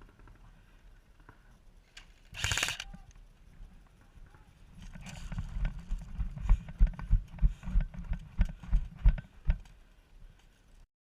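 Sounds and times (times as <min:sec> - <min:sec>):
running footsteps: 0:04.9 - 0:09.7.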